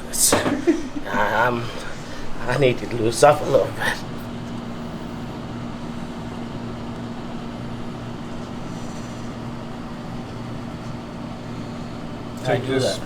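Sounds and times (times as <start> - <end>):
steady mechanical hum: 0.0 - 13.0.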